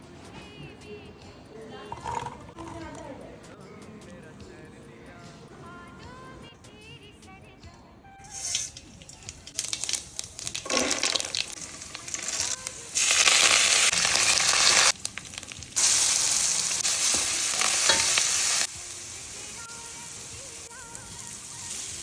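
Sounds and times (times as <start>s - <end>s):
steady sizzling: 8.2s - 22.0s
food frying in hot oil: 8.3s - 22.0s.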